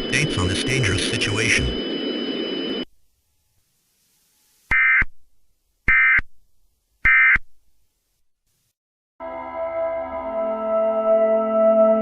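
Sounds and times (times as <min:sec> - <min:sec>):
noisy background: 0:00.0 - 0:02.9
warbling digital data tones: 0:00.0 - 0:02.9.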